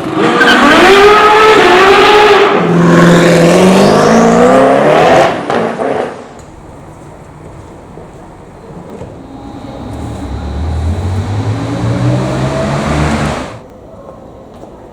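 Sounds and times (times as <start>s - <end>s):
car engine revving: 2.8s - 13.6s.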